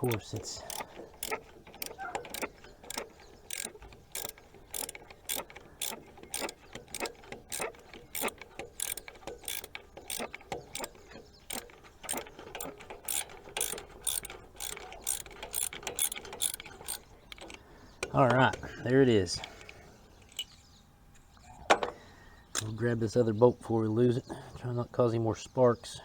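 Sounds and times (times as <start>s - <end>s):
socket ratchet clicking: 0.0s - 17.6s, 19.5s - 20.5s.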